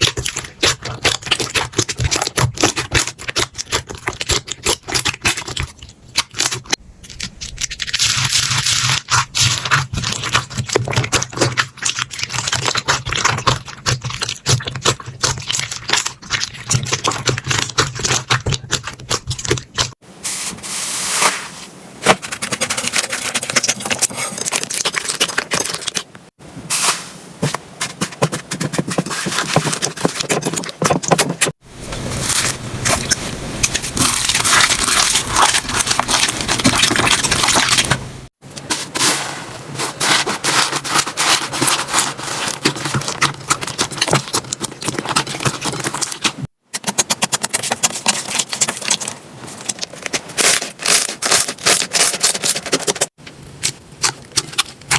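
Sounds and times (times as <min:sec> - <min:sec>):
slime crackling and popping: 0:32.0 - 0:38.1.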